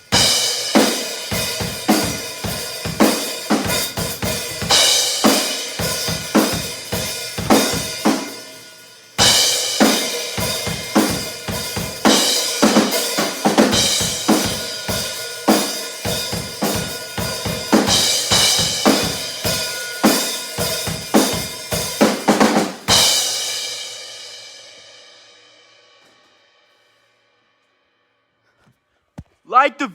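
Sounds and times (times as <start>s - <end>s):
drum kit playing: 0.0s - 24.0s.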